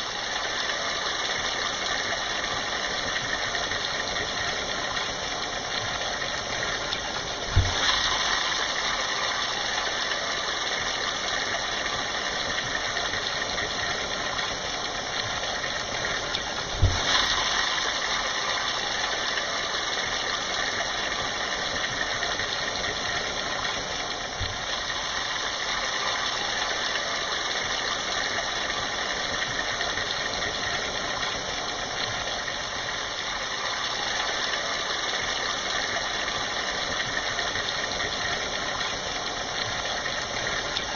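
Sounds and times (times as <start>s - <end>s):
heavy rain: 0.0s - 40.9s
low thumps: 16.8s - 17.4s.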